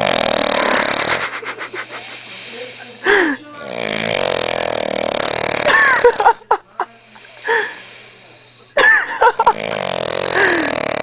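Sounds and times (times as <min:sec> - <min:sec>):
short snorts: 0:00.0 - 0:03.0, 0:09.5 - 0:11.0
person snoring heavily: 0:00.0 - 0:06.2, 0:07.2 - 0:08.4, 0:09.3 - 0:11.0.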